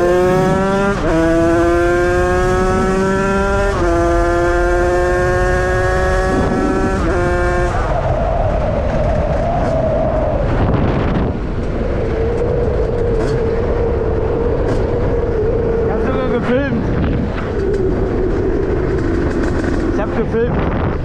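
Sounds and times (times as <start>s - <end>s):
two-stroke engine high revs: 0.0s - 7.7s.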